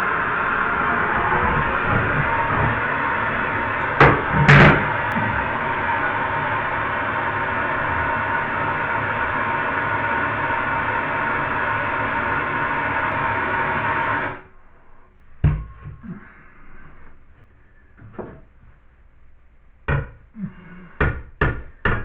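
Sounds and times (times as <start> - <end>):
propane torch flame hissing: 0.0 - 14.4.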